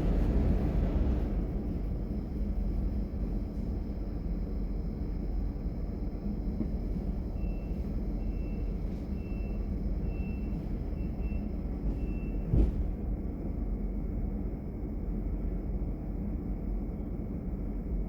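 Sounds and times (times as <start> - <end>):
train wheels rumbling: 0.0 - 4.7.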